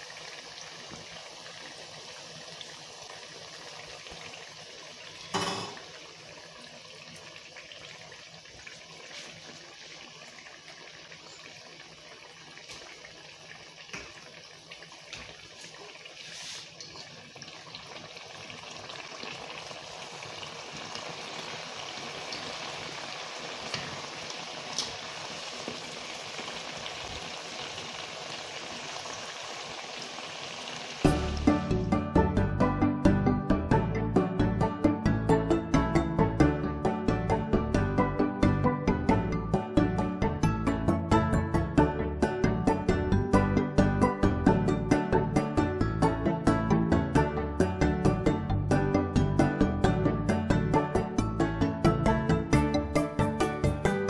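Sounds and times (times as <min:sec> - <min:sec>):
dough frying in oil: 0:00.0 - 0:31.8.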